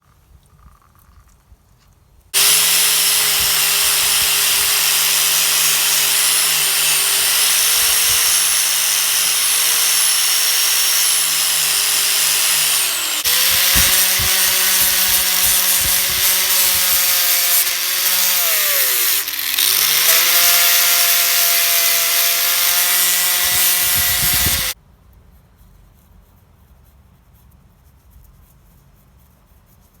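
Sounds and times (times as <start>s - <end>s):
power tool grinding metal: 2.4s - 24.8s.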